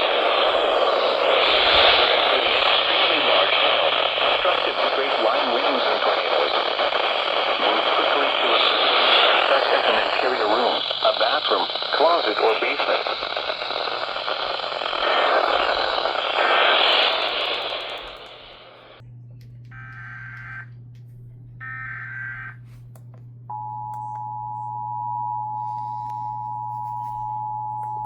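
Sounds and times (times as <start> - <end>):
radio static hiss: 0.0 - 19.0
data tone bursts: 7.6 - 18.5.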